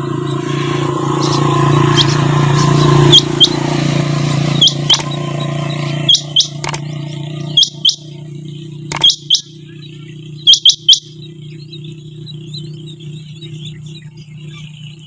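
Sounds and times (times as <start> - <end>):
low hum: 0.0 - 15.0
quail calling: 2.8 - 3.6, 4.5 - 5.3, 6.0 - 6.9, 7.5 - 8.2, 8.9 - 11.3.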